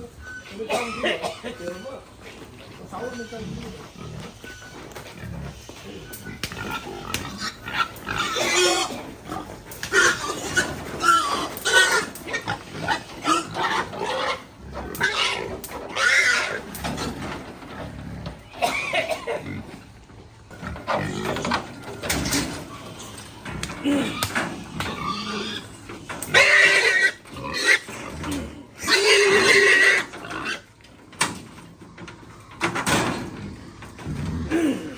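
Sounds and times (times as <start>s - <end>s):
pigs squealing: 0.4s - 30.8s, 32.0s - 34.9s.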